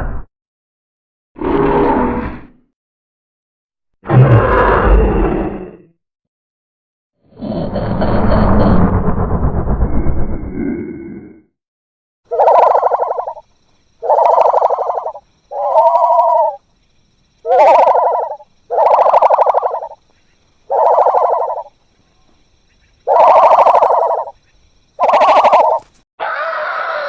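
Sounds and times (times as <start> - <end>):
loud bird-like creature calls: 14.0 - 16.6, 17.4 - 20.0, 20.7 - 21.7, 23.1 - 24.4, 25.0 - 27.0.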